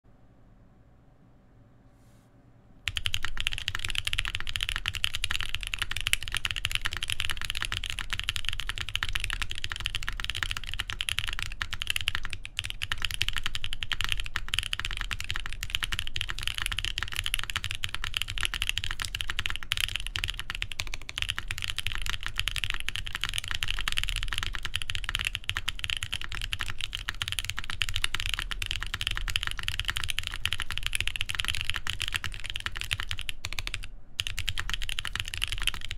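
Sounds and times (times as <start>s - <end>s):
fast typing on mechanical keyboard: 2.9s - 35.9s.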